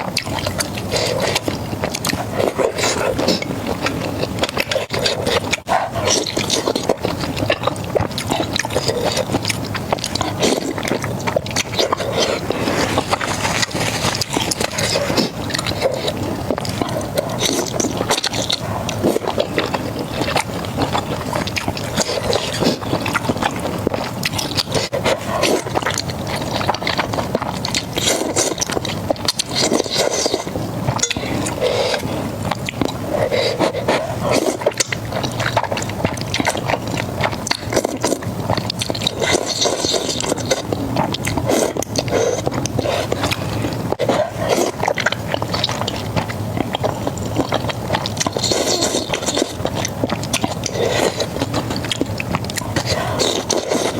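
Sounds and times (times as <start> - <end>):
crunching crispy fried food: 5.5 - 24.9.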